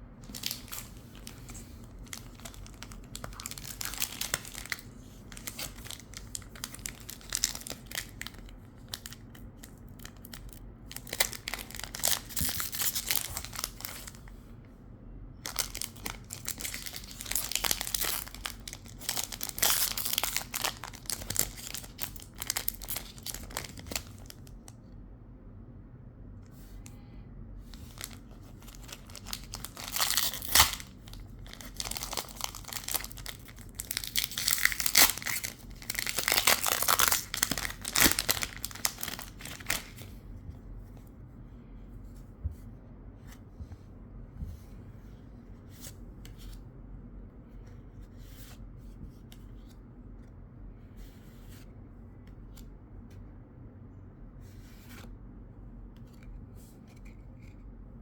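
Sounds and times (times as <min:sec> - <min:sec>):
foil wrapper tearing and crinkling: 0:00.3 - 0:01.4, 0:02.0 - 0:09.2, 0:10.0 - 0:14.2, 0:15.5 - 0:24.4, 0:27.8 - 0:40.0.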